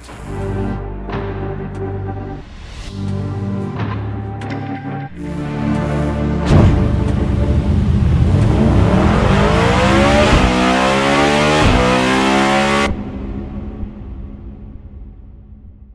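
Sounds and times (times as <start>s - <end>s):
car engine accelerating hard: 5.8s - 13.9s.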